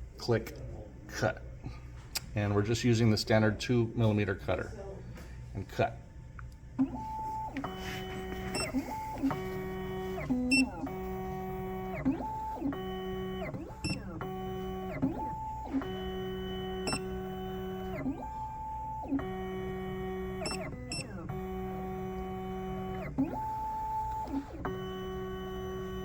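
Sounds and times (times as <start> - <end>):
stepper motors whining: 6.8 - 26.0.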